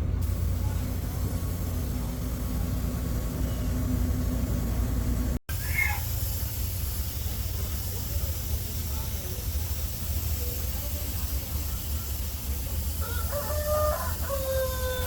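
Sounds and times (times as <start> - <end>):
steady low rumble: 0.0 - 5.4
rooster crowing: 13.0 - 15.0.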